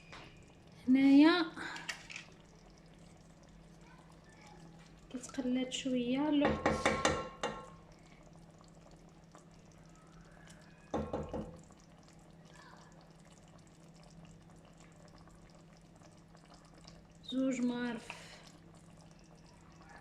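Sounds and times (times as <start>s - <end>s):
utensil clattering against pot: 6.4s - 7.8s.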